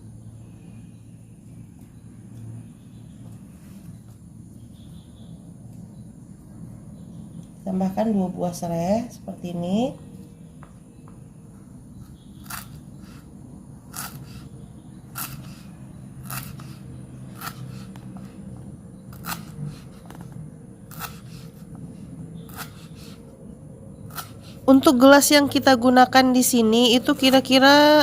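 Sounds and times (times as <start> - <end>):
low steady hum: 0.0 - 28.0
knife cutting stalks: 12.4 - 13.2, 13.9 - 14.4, 15.1 - 18.4, 19.1 - 20.3, 20.9 - 21.6, 22.4 - 23.2, 24.1 - 24.5.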